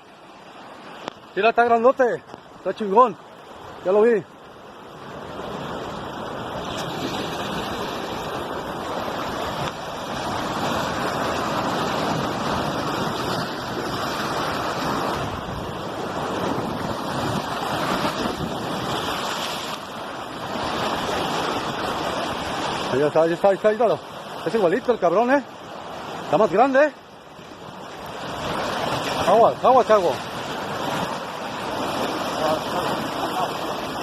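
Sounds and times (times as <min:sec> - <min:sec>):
sea surf rushing: 0:00.0 - 0:34.0
wind on microphone: 0:06.2 - 0:22.7.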